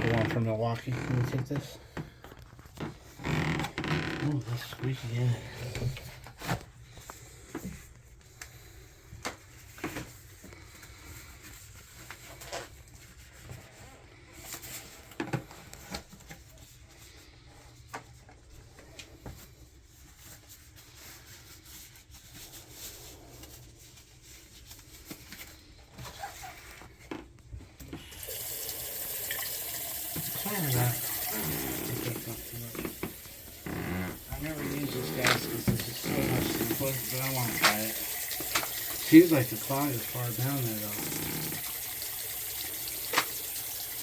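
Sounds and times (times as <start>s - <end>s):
faucet water running into sink: 27.9s - 44.0s.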